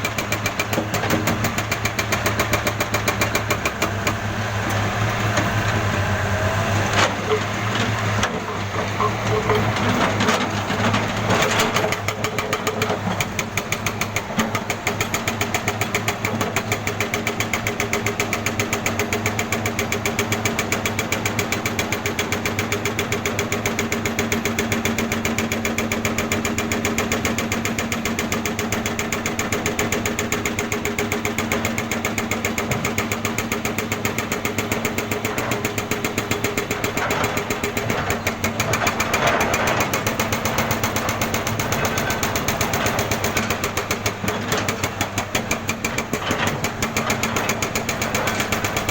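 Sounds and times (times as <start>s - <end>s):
engine hum: 0.0s - 14.9s
jackhammer hammering: 28.5s - 48.9s.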